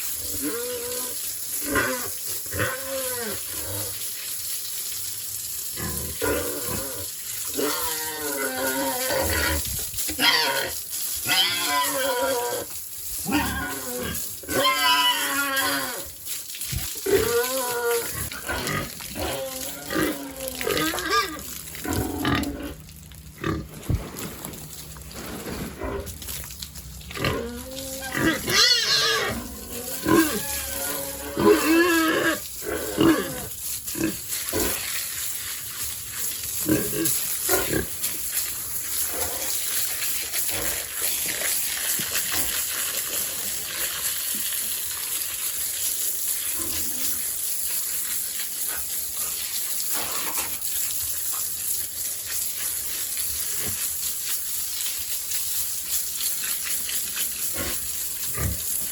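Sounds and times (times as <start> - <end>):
running water: 0.0 - 58.9
pigs grunting and squealing: 0.2 - 4.1, 5.8 - 24.3, 25.6 - 35.0, 36.2 - 44.0, 46.4 - 50.7, 56.6 - 58.9.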